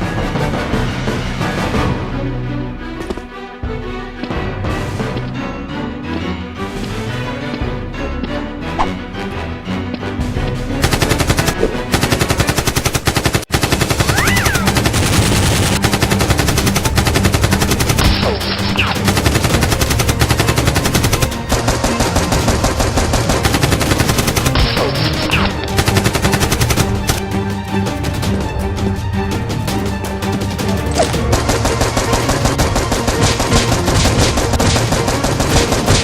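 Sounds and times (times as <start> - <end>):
background music: 0.0 - 36.0
automatic gunfire: 10.8 - 25.2, 31.1 - 36.0.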